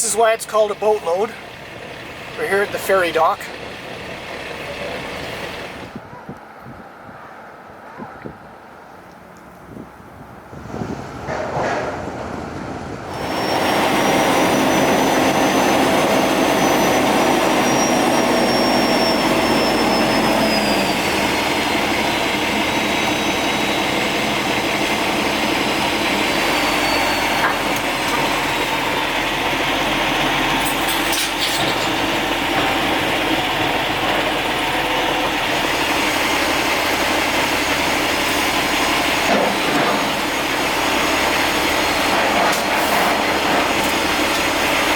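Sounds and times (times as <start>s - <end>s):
heavy engine droning: 0.0s - 6.0s, 10.6s - 44.9s
high whine sliding down: 13.0s - 32.0s.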